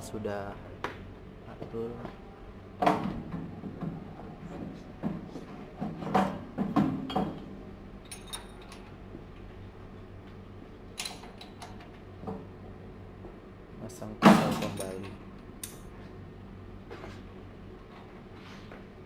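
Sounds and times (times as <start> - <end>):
low steady hum: 0.0 - 19.0
metal clanks and clicks: 14.2 - 15.8.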